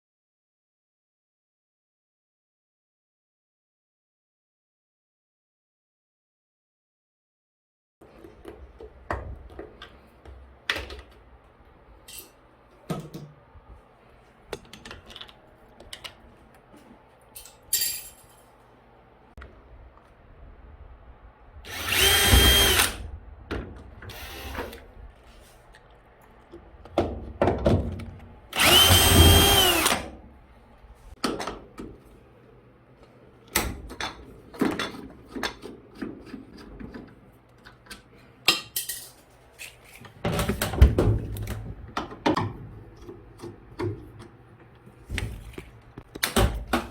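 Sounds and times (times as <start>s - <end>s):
power drill motor whine: 21.7s - 23.0s, 24.1s - 24.8s, 28.6s - 30.1s.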